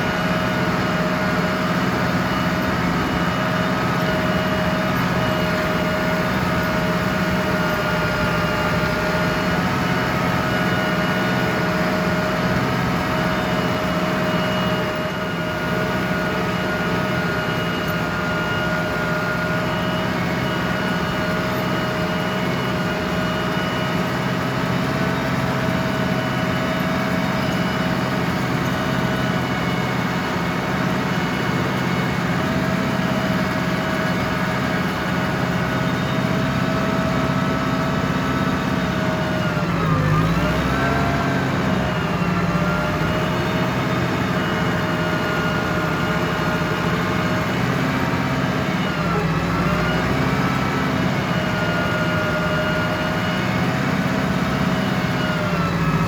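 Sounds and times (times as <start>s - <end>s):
tractor diesel engine running: 0.0s - 56.0s.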